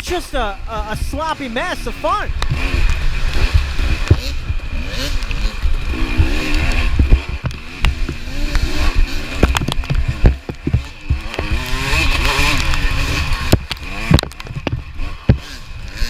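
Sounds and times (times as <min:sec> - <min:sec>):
dirt bike engine revving: 0:00.0 - 0:16.0
sharp knocks and clatter: 0:09.4 - 0:11.6, 0:13.5 - 0:15.6.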